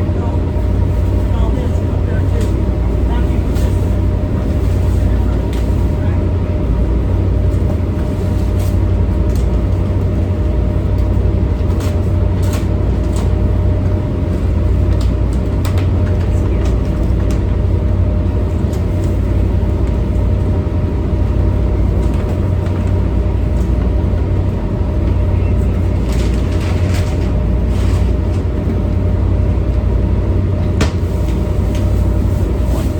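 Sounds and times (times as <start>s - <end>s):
diesel machinery drone: 0.0s - 32.9s.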